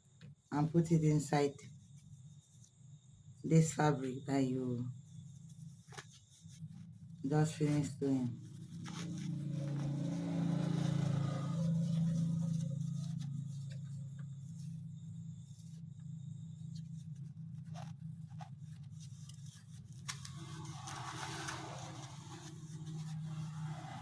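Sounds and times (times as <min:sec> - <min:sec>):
steady low hum: 0:00.0 - 0:24.0
rustling and scraping of filling: 0:16.8 - 0:24.0.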